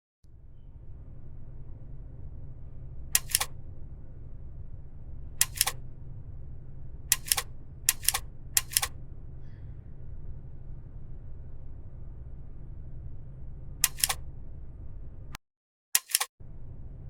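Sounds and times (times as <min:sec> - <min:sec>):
steady low hum: 0:00.3 - 0:15.4, 0:16.4 - 0:17.0
button double clicks: 0:03.2 - 0:03.5, 0:05.4 - 0:05.8, 0:13.8 - 0:14.2, 0:16.0 - 0:16.3.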